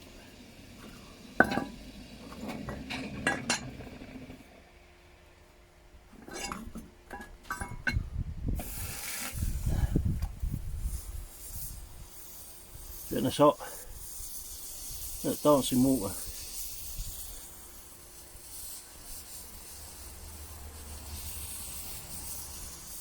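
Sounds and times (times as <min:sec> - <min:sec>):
water sizzling on hot metal: 0:00.0 - 0:04.6, 0:08.6 - 0:23.0
metal clinking and knocking: 0:01.4 - 0:04.1, 0:06.2 - 0:08.1.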